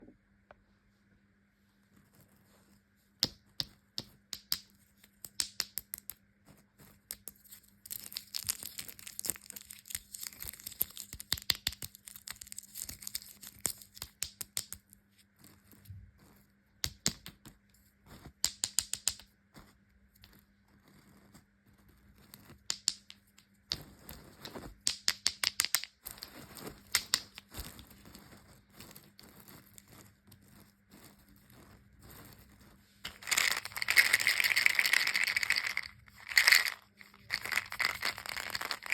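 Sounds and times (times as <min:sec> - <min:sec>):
candy wrappers crinkling: 0:07.0 - 0:14.6, 0:26.1 - 0:38.9.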